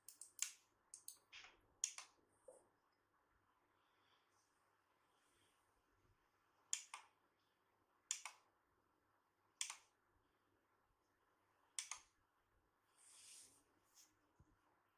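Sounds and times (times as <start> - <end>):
soft rustle: 12.9 - 14.5.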